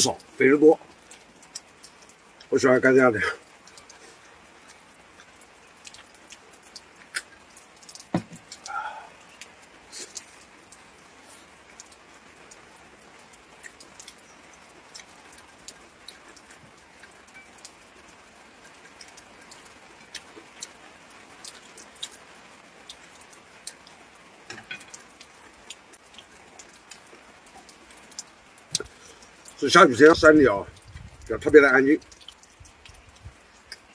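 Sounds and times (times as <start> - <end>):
rain dripping: 0.0 - 33.9
faint hiss: 7.0 - 12.8
loud knock: 8.2 - 8.4.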